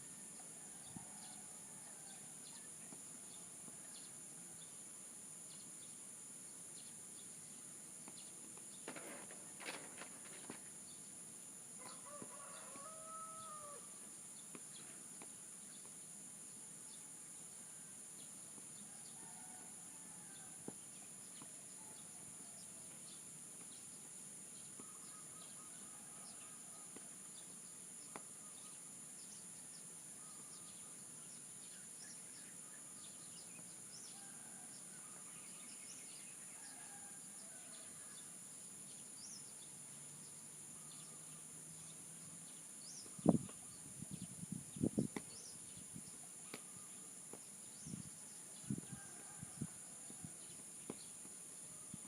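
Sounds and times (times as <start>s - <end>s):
faint bird chirps: 40.8s - 47.1s.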